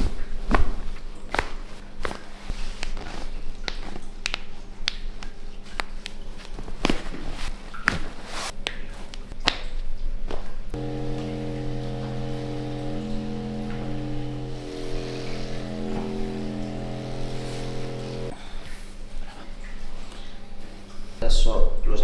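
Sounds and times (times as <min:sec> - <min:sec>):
faint steady hum: 0:10.8 - 0:18.4.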